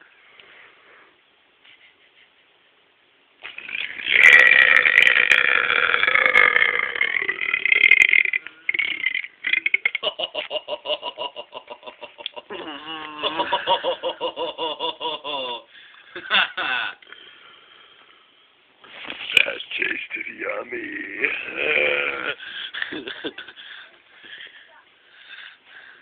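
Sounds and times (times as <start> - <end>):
laughter: 1.6 - 2.7, 10.0 - 15.6, 16.2 - 17.0, 22.7 - 23.6
long loud burp: 3.4 - 10.1, 21.1 - 22.5.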